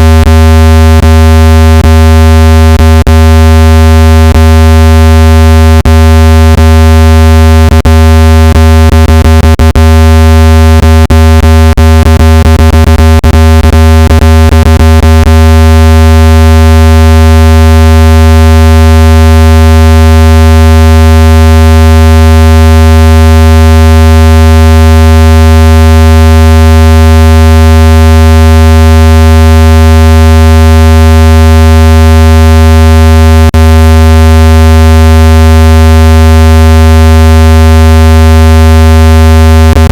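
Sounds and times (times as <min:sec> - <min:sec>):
low-pitched electronic tone: 0:00.0 - 0:18.0, 0:31.8 - 0:39.9.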